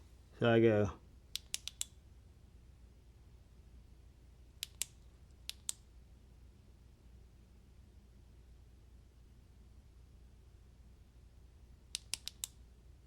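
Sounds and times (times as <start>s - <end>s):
flashlight switch clicks: 1.4s - 1.9s, 4.6s - 5.8s, 12.0s - 12.6s.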